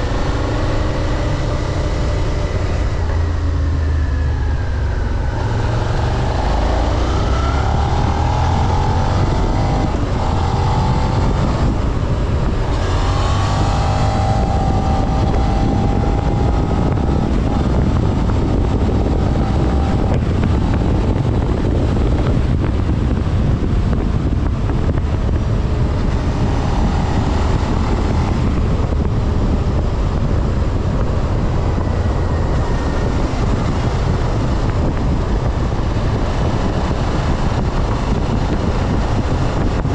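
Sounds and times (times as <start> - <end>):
motorcycle engine revving: 0.0 - 39.9
wind noise on microphone: 0.0 - 39.9.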